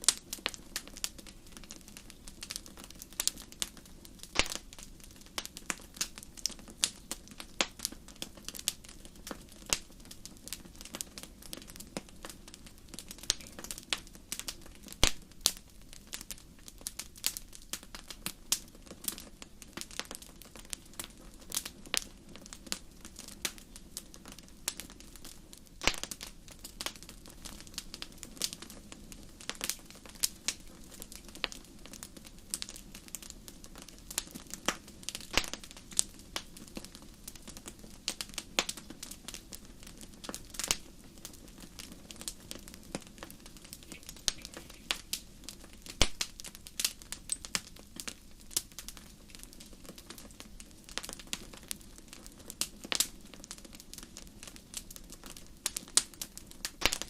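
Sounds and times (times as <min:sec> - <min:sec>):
low rumble of flames: 0:00.0 - 0:57.0
wood fire crackling: 0:00.0 - 0:57.0
sharp pops and snaps: 0:04.2 - 0:07.8, 0:15.0 - 0:15.6, 0:25.8 - 0:26.3, 0:34.3 - 0:35.8, 0:42.9 - 0:48.2, 0:56.7 - 0:57.0.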